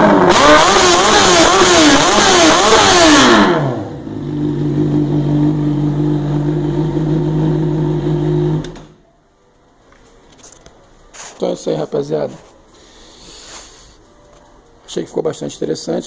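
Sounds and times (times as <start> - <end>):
motorcycle engine revving: 0.0 - 9.0
motorcycle engine idling: 3.9 - 8.6.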